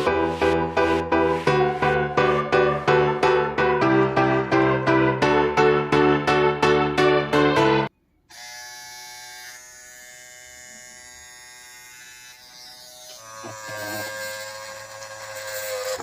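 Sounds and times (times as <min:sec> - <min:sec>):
small motor electric whine: 0:08.3 - 0:16.0.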